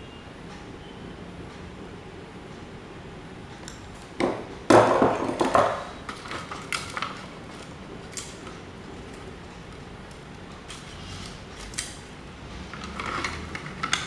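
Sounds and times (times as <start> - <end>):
hard objects knocking: 4.2 - 7.7.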